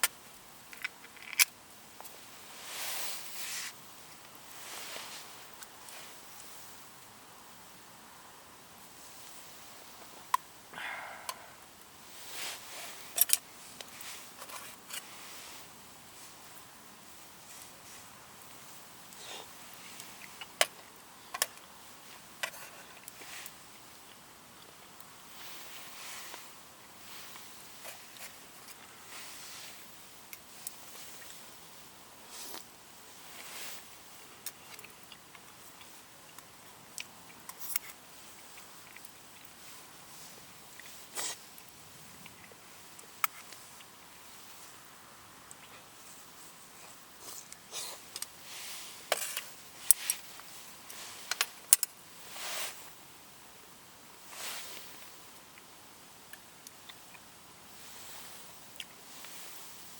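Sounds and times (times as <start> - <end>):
campfire crackling: 0.0 - 59.9
soft rushes of noise: 2.2 - 3.8, 4.4 - 6.8, 10.8 - 16.4.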